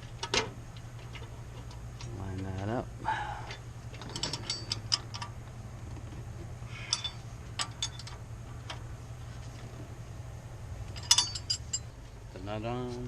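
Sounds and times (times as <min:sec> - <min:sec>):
sharp metallic clicks and clinks: 0:04.0 - 0:05.4, 0:06.9 - 0:08.8, 0:10.9 - 0:12.0.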